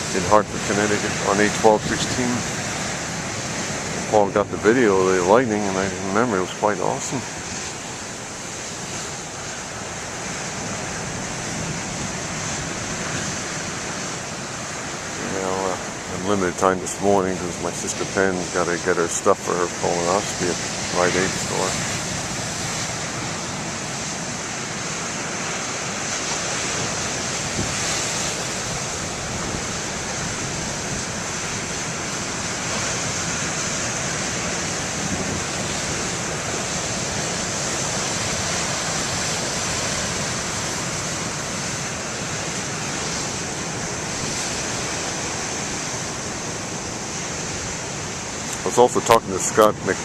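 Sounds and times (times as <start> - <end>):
ocean surf crashing on rocks: 0.0 - 50.0
wind on microphone: 6.8 - 18.4, 20.4 - 48.7.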